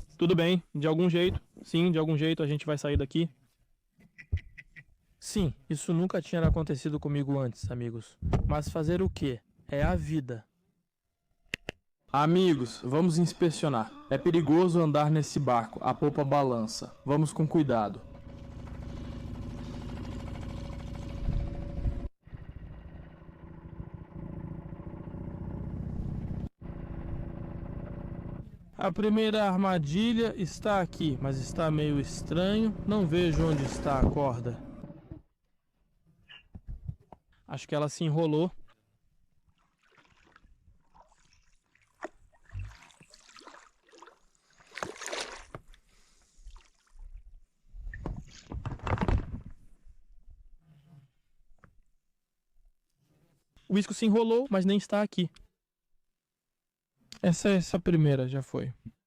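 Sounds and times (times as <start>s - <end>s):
outboard motor running: 17.0s - 29.0s, 29.8s - 35.2s
water splashing and dripping: 39.5s - 45.6s.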